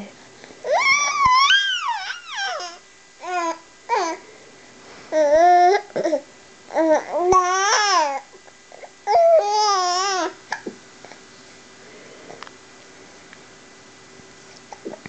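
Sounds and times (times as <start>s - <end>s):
baby cooing and squealing: 0.6s - 4.2s, 8.8s - 10.4s.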